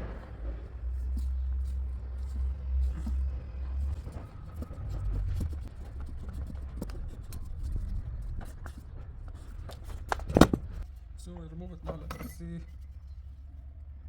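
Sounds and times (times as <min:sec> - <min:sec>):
low steady rumble: 0:00.0 - 0:14.0.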